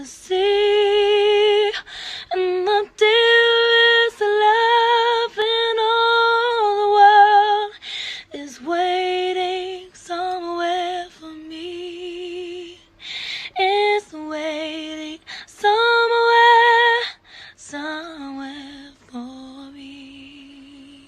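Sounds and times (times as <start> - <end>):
woman singing with vibrato: 0.0 - 21.0
singer breathing: 1.8 - 2.3, 7.8 - 8.3, 12.9 - 13.6, 17.2 - 17.6.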